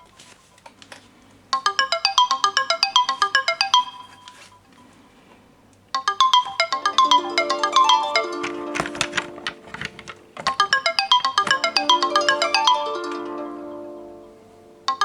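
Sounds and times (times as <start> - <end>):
phone ringtone plucked notes: 1.6 - 4.5, 6.0 - 15.0
tune with held lower notes: 6.0 - 15.0.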